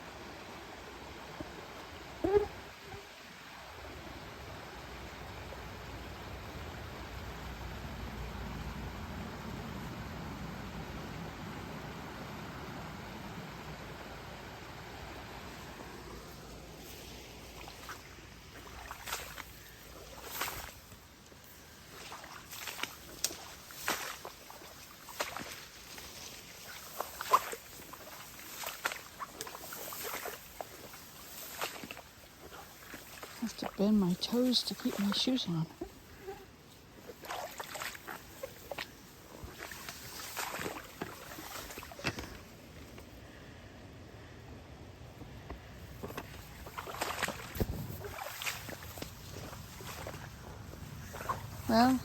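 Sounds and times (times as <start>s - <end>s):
footsteps splashing in water: 16.3s - 35.6s, 36.8s - 42.5s, 46.0s - 52.0s.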